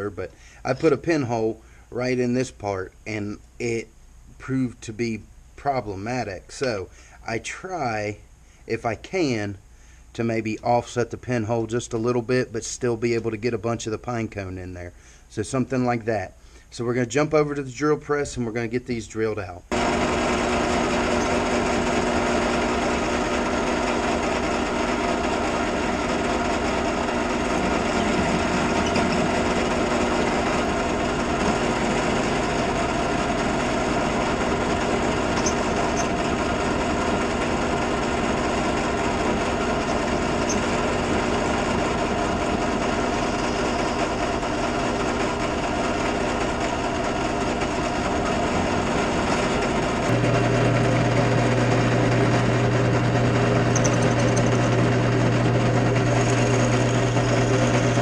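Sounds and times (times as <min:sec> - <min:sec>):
drill press motor hum: 0:19.7 - 0:58.0.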